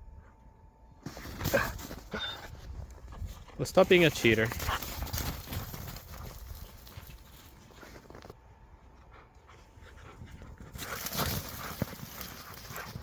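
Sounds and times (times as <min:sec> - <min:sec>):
dogs scuffling: 0:01.0 - 0:08.4, 0:10.4 - 0:13.0
dogs panting: 0:01.5 - 0:08.2, 0:08.8 - 0:13.0.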